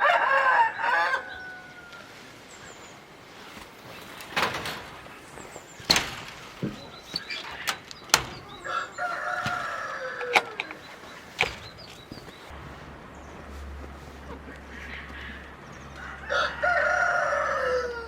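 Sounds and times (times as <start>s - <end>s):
rooster crowing: 0.0s - 2.4s, 8.2s - 10.8s, 15.8s - 18.0s
chickens clucking: 0.3s - 12.6s
sharp knocks: 5.8s - 8.6s, 11.3s - 12.4s.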